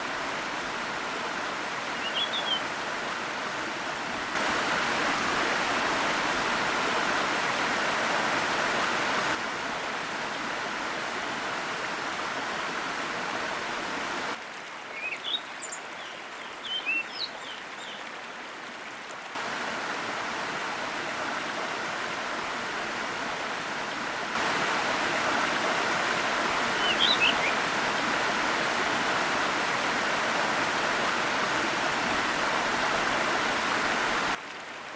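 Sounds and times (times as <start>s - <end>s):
waterfall rushing: 0.0s - 18.5s, 19.3s - 34.9s
small birds chirping: 1.8s - 2.7s, 14.9s - 18.1s, 26.7s - 27.6s.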